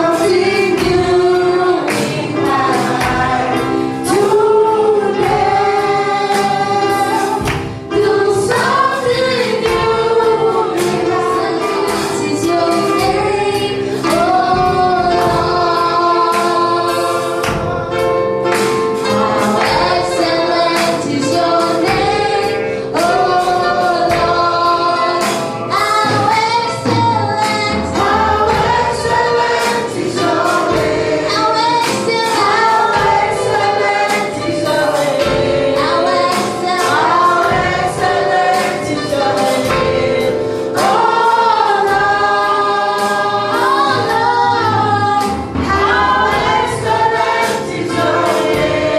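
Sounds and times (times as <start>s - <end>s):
band playing steady beat: 0.0s - 48.9s
group of voices singing: 0.0s - 48.9s.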